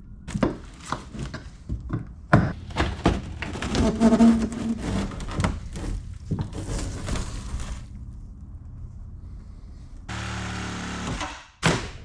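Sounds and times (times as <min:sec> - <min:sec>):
wooden floor being pried apart: 0:02.6 - 0:07.8.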